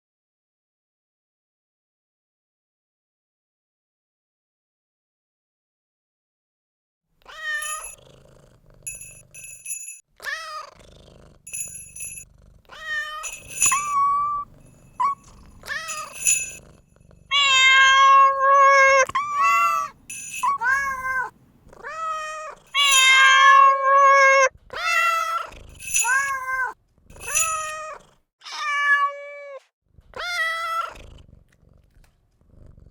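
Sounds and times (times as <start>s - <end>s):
cat meowing: 7.2s - 8.0s, 10.2s - 10.8s, 12.7s - 16.6s, 17.2s - 31.0s.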